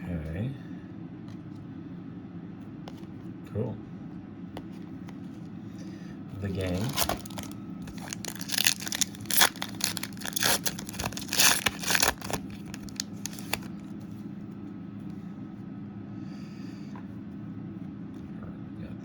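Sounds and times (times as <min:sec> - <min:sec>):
faint steady hum: 0:00.0 - 0:19.0
foil wrapper tearing and crinkling: 0:06.5 - 0:13.7.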